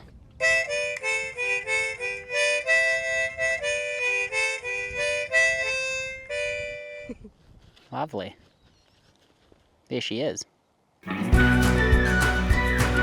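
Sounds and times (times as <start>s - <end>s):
free-reed instrument playing a tune: 0.4s - 7.2s, 11.1s - 13.0s.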